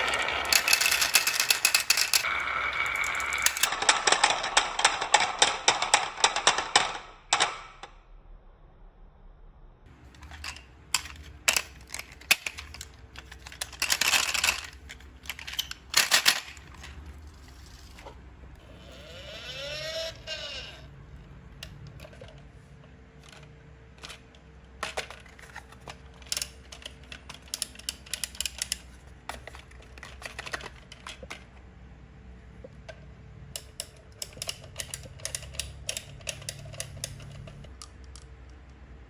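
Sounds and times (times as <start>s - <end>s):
whirring ring of spinning marble: 0.0s - 3.9s, 18.6s - 20.9s
marbles clicking on a marble run: 0.0s - 7.0s.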